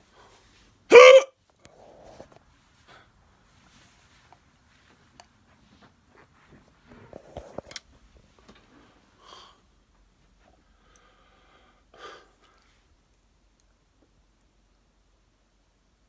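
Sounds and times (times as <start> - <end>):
man hiccuping: 0.9 - 1.3
quiet breathing: 8.6 - 13.2.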